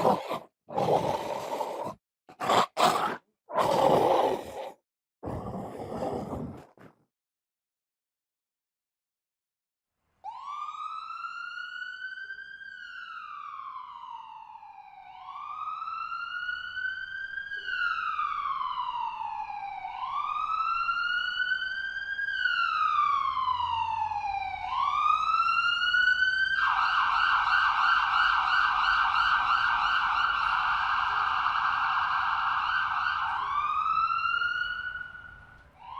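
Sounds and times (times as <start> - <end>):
emergency vehicle siren: 10.2 - 35.9.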